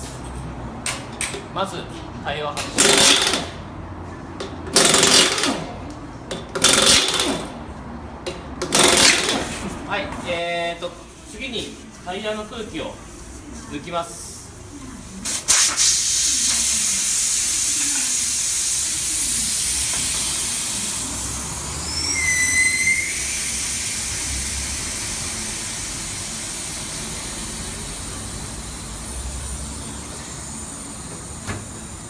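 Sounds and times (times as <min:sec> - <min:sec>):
air hissing from tyre valve: 0:15.2 - 0:32.0
squealing whistle: 0:21.8 - 0:23.5.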